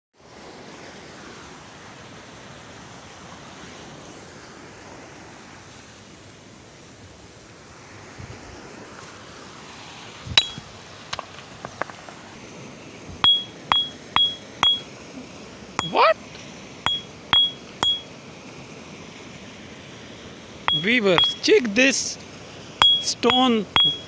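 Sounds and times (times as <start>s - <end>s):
stone vase struck: 10.4s - 10.6s, 13.2s - 14.8s, 16.9s - 18.1s, 20.7s - 21.4s, 22.8s - 24.0s.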